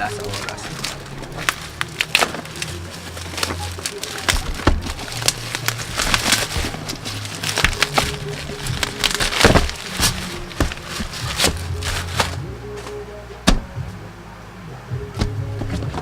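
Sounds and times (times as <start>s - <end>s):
background music with low held notes: 0.0s - 16.0s
cardboard package being torn open: 0.1s - 12.4s.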